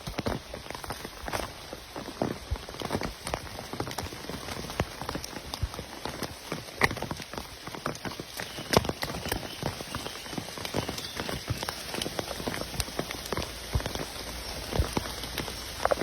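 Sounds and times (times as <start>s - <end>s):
rain falling: 0.0s - 16.0s.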